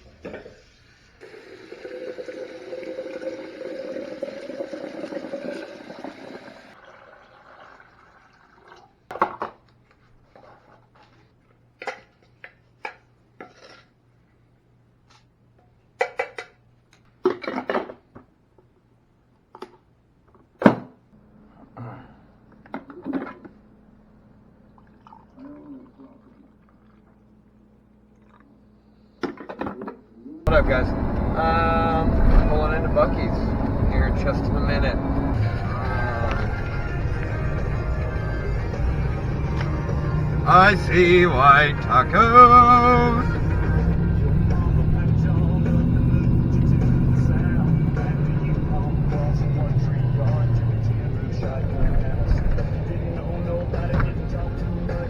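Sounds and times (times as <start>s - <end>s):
water running into container: 1.1s - 9.1s.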